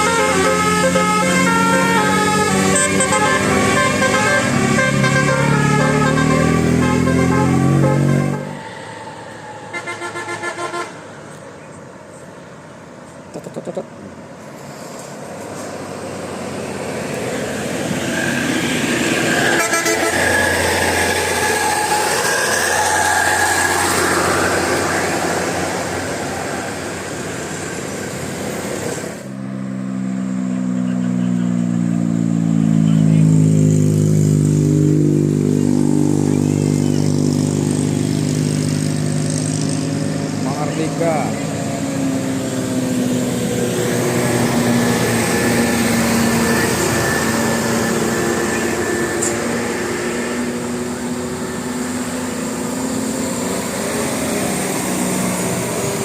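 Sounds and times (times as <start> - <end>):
musical bus horn melody: 0.0 - 8.6, 9.7 - 11.0, 19.4 - 21.4
high horn tones: 0.0 - 8.8, 9.6 - 11.0, 19.4 - 22.3, 45.0 - 50.2
large vehicle passing: 0.0 - 56.0.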